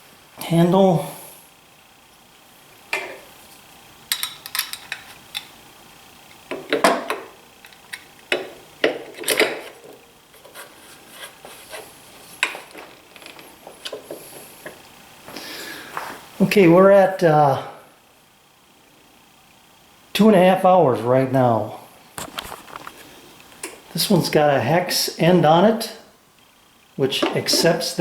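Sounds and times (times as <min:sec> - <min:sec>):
metal clicks and clanks: 0:04.1 - 0:05.5, 0:06.5 - 0:10.0
tools being handled: 0:04.1 - 0:05.5, 0:06.5 - 0:14.8, 0:27.2 - 0:27.8.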